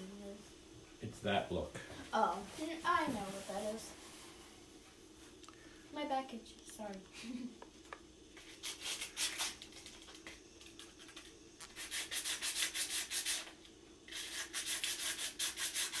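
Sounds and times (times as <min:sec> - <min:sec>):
hand sanding plastic: 0:10.8 - 0:13.5, 0:14.1 - 0:16.0.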